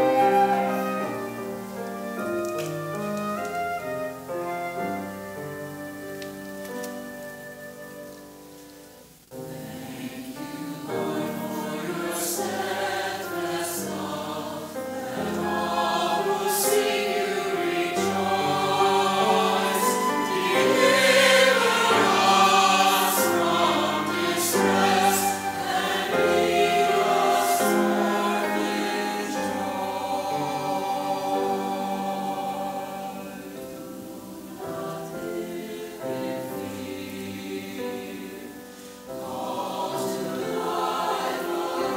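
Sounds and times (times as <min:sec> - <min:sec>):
church choir singing: 0:00.0 - 0:41.9.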